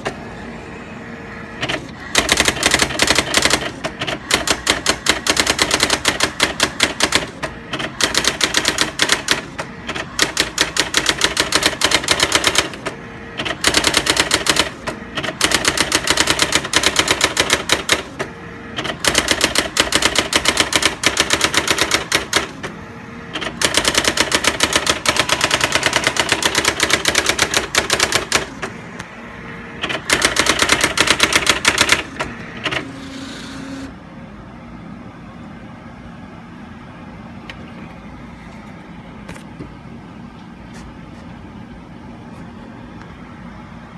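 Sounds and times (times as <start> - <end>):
typewriter motor hum: 1.4 - 34.0
typewriter printing strikes: 1.6 - 29.0, 29.8 - 33.9.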